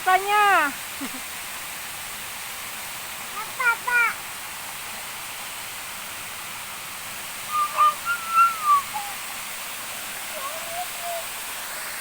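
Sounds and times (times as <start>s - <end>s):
waterfall rushing: 0.0s - 12.0s
high-pitched gliding call: 7.5s - 9.2s.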